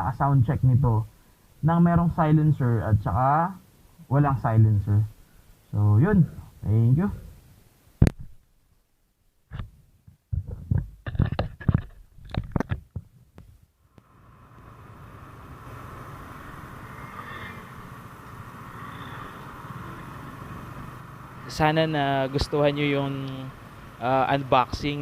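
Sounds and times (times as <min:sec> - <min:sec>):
knocks and bumps: 0:09.5 - 0:13.6
road wind noise: 0:13.8 - 0:25.0
motorcycle engine hum: 0:13.9 - 0:25.0.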